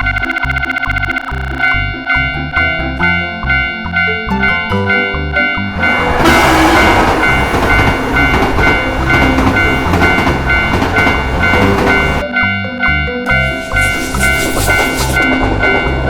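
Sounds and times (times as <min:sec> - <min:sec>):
crossing bell ringing: 0:00.0 - 0:16.0
train rushing rumble: 0:05.6 - 0:12.2, 0:13.4 - 0:16.0.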